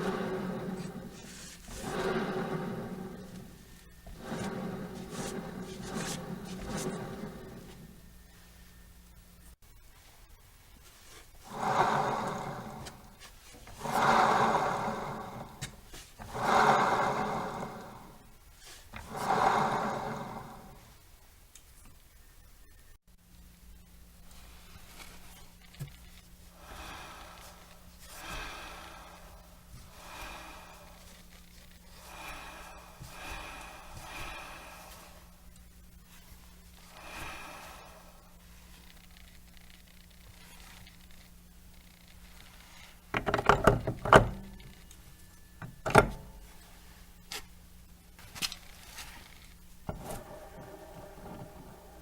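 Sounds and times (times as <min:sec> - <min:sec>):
scooter wheel rumbling grind: 0:00.0 - 0:08.2, 0:11.4 - 0:20.9, 0:48.3 - 0:52.0.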